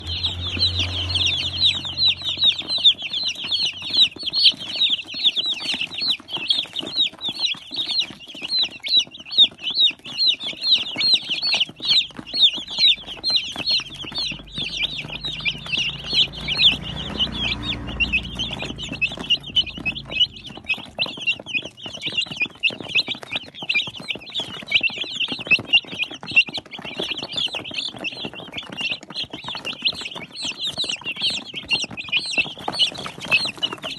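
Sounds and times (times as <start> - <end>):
low rumble: 0.0 - 4.1, 12.7 - 21.6
chicks peeping: 0.0 - 33.9.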